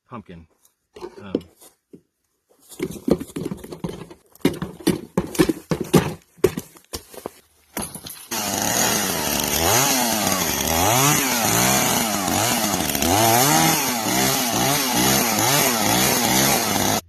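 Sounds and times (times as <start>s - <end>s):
chainsaw revving: 8.3s - 17.0s.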